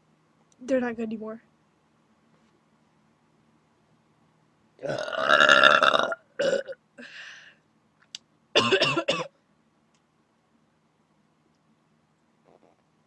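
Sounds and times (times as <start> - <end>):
loud burping: 4.8 - 6.8.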